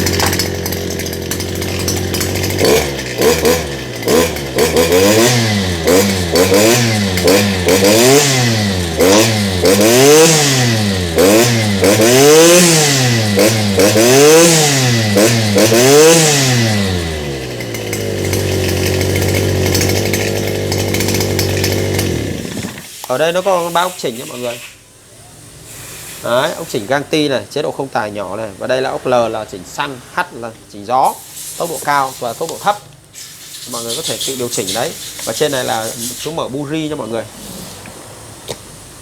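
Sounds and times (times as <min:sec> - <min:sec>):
brushcutter engine revving: 0:00.0 - 0:23.2, 0:33.7 - 0:37.9.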